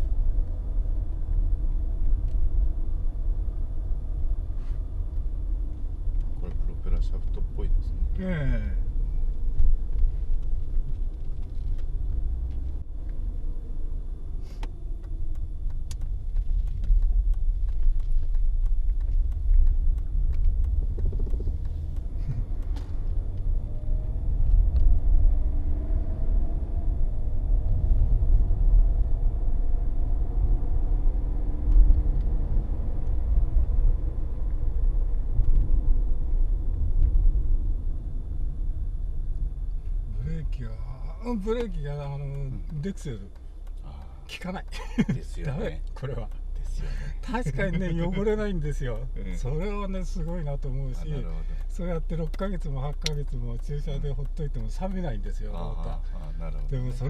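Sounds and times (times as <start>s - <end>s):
car engine accelerating: 0.0s - 57.0s
road and drivetrain rumble: 0.0s - 57.0s.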